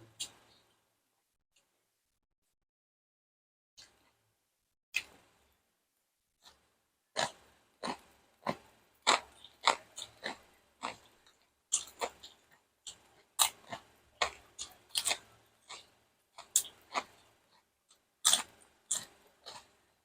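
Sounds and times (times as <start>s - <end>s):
chewing crisp food crunches: 7.2s - 19.8s.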